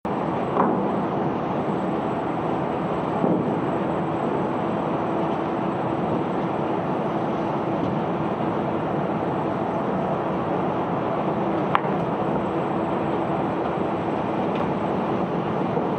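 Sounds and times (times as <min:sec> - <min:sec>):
machinery rumbling: 0:00.1 - 0:15.9.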